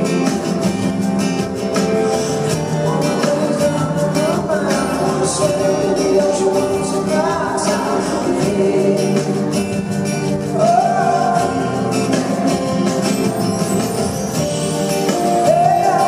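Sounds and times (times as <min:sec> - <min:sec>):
rock band playing: 0:00.0 - 0:16.0
person singing lead vocal: 0:01.8 - 0:13.4, 0:14.6 - 0:16.0.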